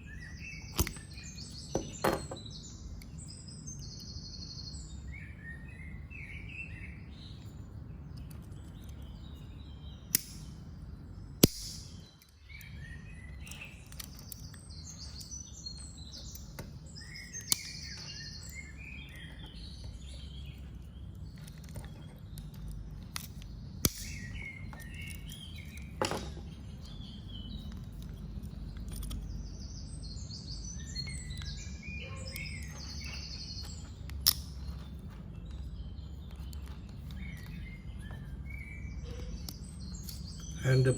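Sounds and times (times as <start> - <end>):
small birds chirping: 0.0 - 40.9
sharp clicks: 10.1 - 10.6.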